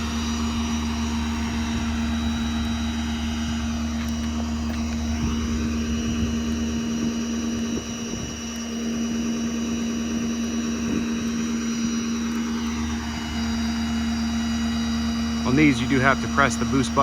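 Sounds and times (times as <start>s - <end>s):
diesel engine idling: 0.0s - 17.0s.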